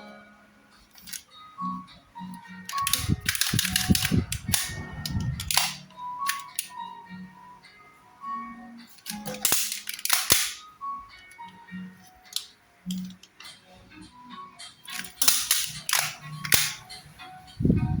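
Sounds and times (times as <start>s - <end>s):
faint music: 0.0s - 18.0s
toy pistol mechanism snapping: 1.0s - 1.3s, 2.7s - 6.8s, 9.0s - 11.4s, 12.3s - 13.5s, 14.9s - 17.0s.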